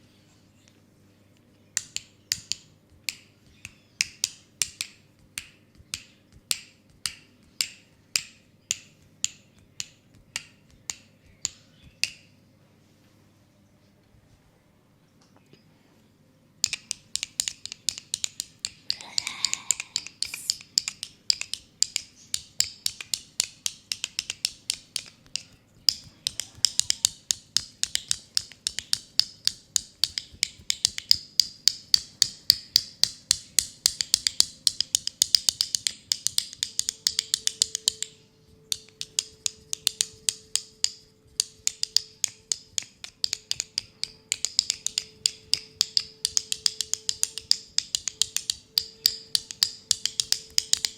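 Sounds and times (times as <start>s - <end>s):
oiled hands massaging skin: 18.7s - 21.4s.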